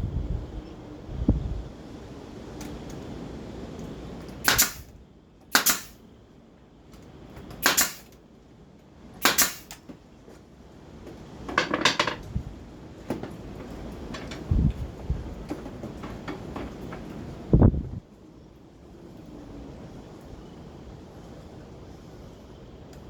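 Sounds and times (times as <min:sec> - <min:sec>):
nail gun firing into wood: 0:04.4 - 0:06.0, 0:07.5 - 0:08.2, 0:09.2 - 0:09.8.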